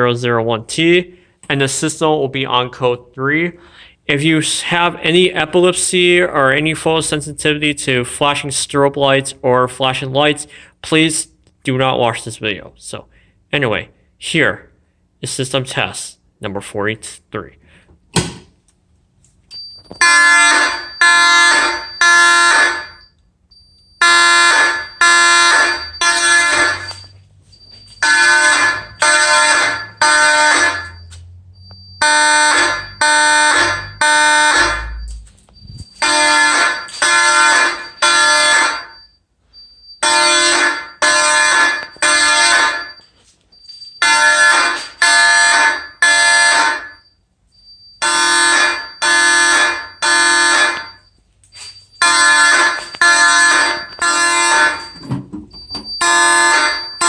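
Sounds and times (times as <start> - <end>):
fire alarm horn blasts: 19.6 - 57.0.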